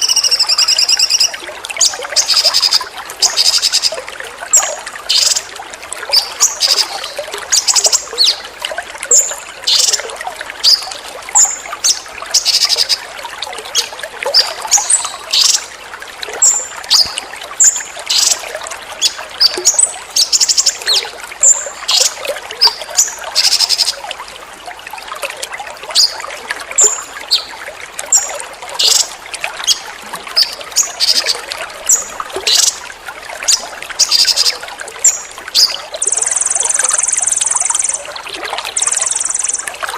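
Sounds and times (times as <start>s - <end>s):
songbird calls and whistles: 0.0s - 1.4s, 33.5s - 38.1s, 38.7s - 39.7s
water trickling: 0.0s - 39.9s.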